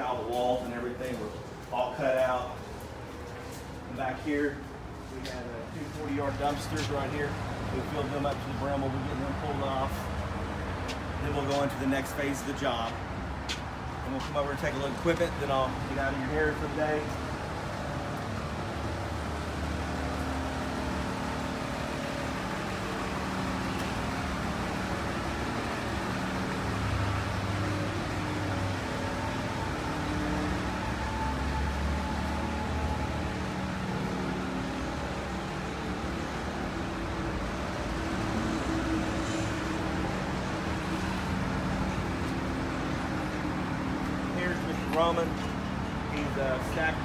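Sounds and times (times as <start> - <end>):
vehicle engines humming: 0.0 - 47.0.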